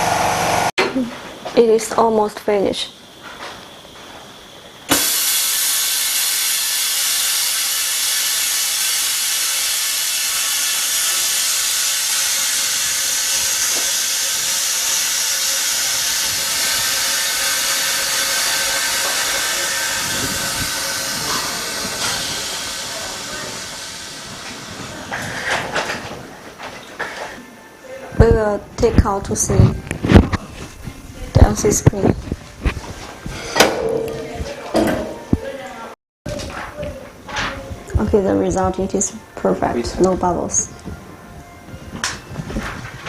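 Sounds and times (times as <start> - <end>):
compressed air venting hiss: 4.9 - 25.7.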